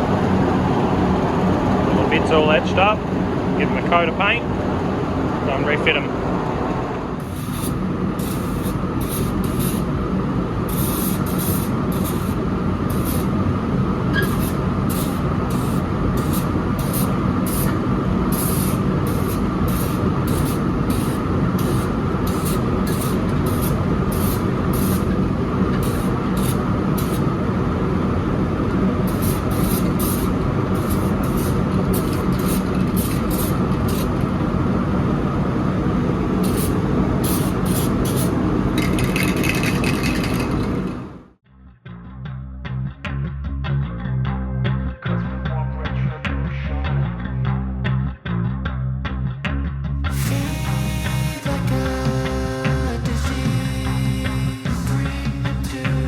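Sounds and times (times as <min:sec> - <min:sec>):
steady low rumbling: 0:00.0 - 0:56.0
spray paint hissing bursts: 0:07.2 - 0:10.0, 0:10.6 - 0:13.4, 0:14.1 - 0:27.4, 0:29.0 - 0:34.4, 0:36.4 - 0:40.9.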